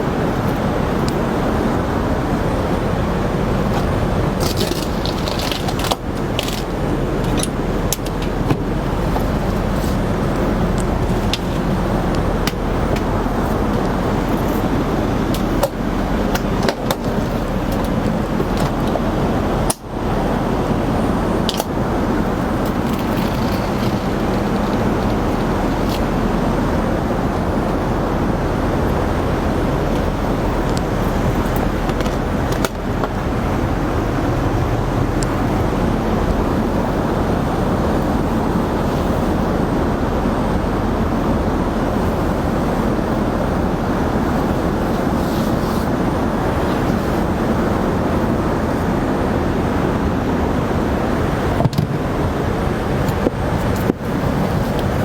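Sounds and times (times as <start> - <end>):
airliner cabin roar: 0.0 - 55.0
faint clicks and knocks: 22.4 - 26.2.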